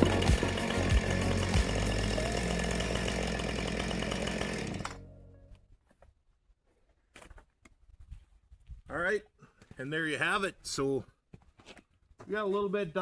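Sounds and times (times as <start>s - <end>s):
chainsaw engine running: 0.0s - 5.3s.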